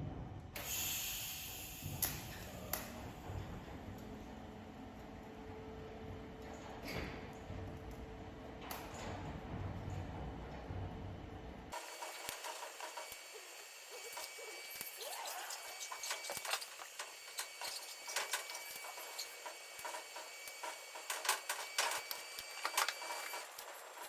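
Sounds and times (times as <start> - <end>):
welding hiss with high whine: 0.6 - 3.5, 11.8 - 24.0
welding clicks and crackles: 11.8 - 24.0.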